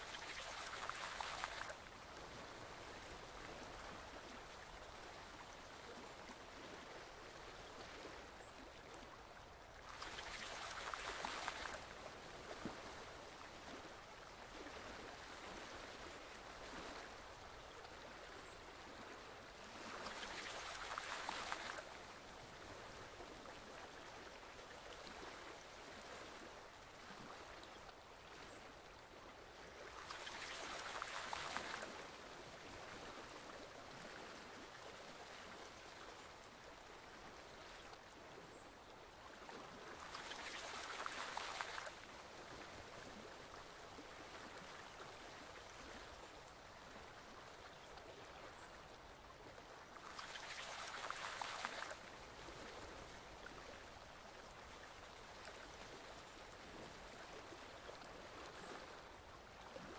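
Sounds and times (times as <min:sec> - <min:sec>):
forest stream flowing: 0:00.0 - 0:59.9.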